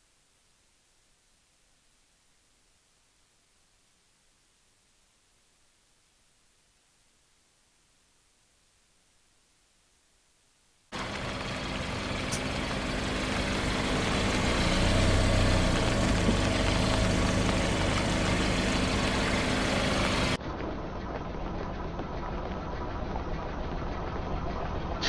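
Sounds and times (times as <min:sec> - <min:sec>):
car engine running at low revs: 0:10.9 - 0:25.0.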